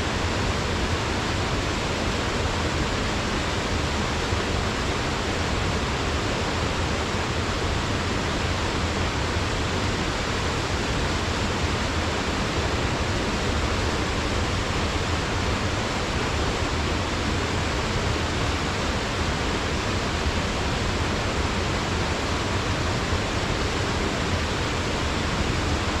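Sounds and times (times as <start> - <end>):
waterfall rushing with deep rumble: 0.0 - 26.0.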